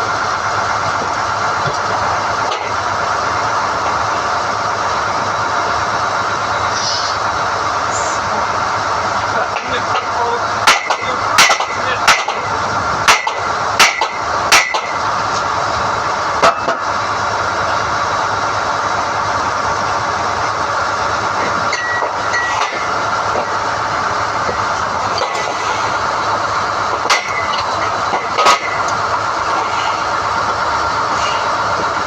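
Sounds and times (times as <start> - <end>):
drilling rig running: 0.0 - 32.0
sharp metal clanks: 9.6 - 15.0, 27.0 - 29.0.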